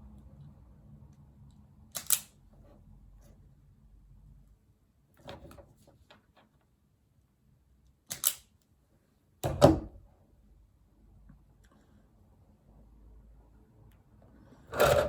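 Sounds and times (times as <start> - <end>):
hand tools clicking on wire: 1.9 - 2.3, 8.1 - 8.5.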